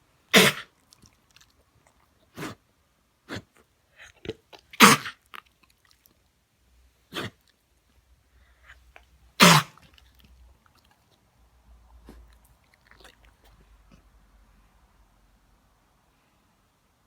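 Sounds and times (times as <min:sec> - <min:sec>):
dog sneezing or coughing: 0:00.3 - 0:00.7, 0:02.3 - 0:02.6, 0:03.3 - 0:04.1, 0:04.7 - 0:05.2, 0:07.1 - 0:07.4, 0:09.4 - 0:10.0.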